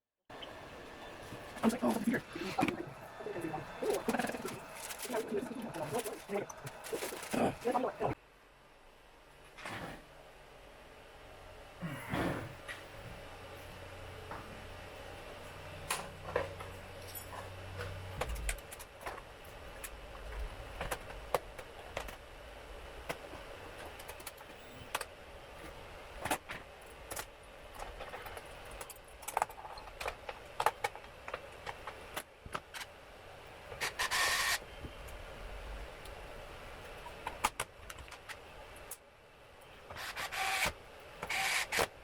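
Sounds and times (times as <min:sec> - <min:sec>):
rustling or scraping: 0:01.2 - 0:08.2.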